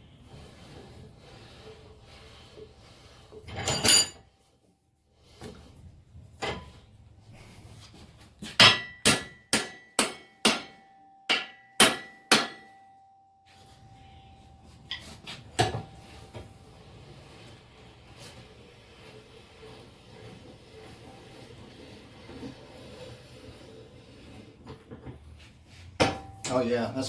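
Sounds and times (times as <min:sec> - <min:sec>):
hammer striking metal: 0:08.6 - 0:13.0.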